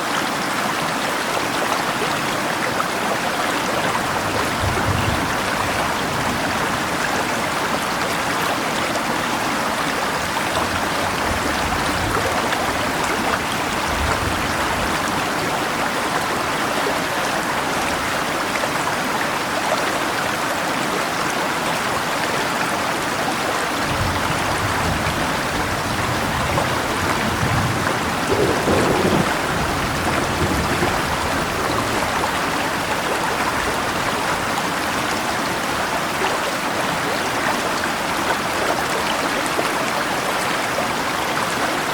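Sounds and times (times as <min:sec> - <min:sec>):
river rushing: 0:00.0 - 0:41.9
rain falling: 0:00.2 - 0:41.9
distant thunder rumbling: 0:23.9 - 0:33.7.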